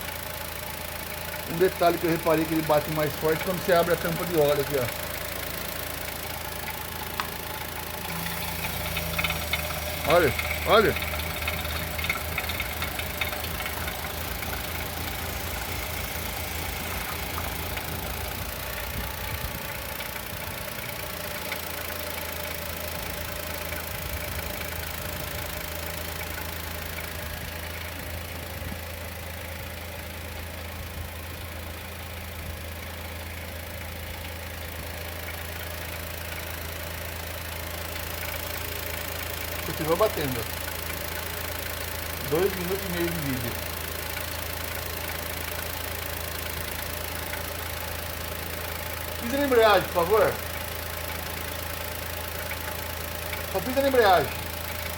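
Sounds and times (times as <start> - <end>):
car engine idling: 0.0 - 54.9
rhythmic engine knocking: 0.0 - 54.9.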